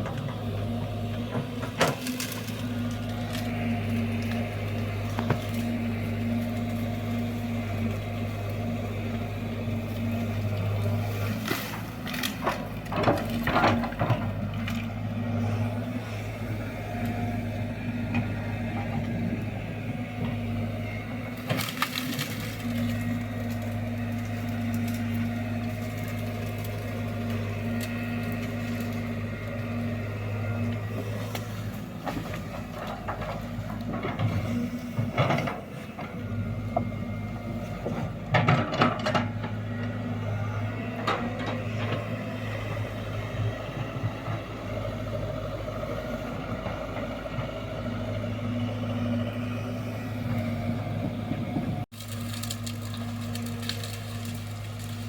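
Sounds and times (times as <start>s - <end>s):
excavator diesel engine running: 0.0s - 55.0s
bucket crunching and cracking ground: 21.2s - 35.7s, 51.9s - 55.0s.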